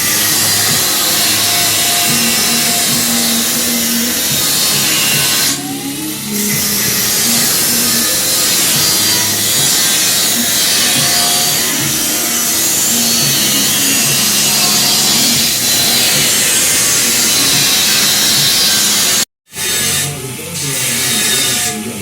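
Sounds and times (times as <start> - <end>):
background music with bass line: 0.0 - 22.0.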